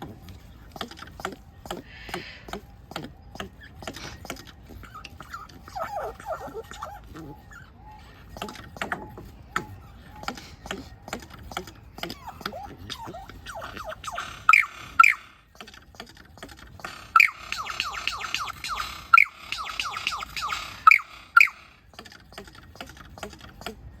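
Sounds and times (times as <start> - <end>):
small animal squeaky chirps: 0.0 - 24.0
small clicks: 8.3 - 24.0.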